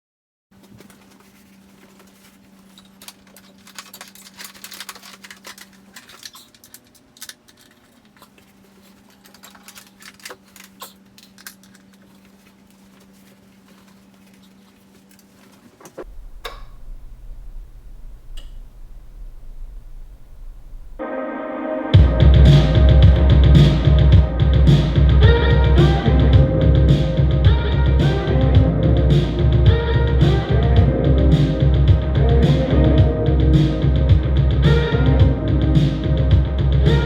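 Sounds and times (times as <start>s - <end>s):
packaging rustling and clicking: 0.6s - 17.2s
faint steady hum: 0.6s - 21.0s
low steady sound: 16.0s - 21.1s.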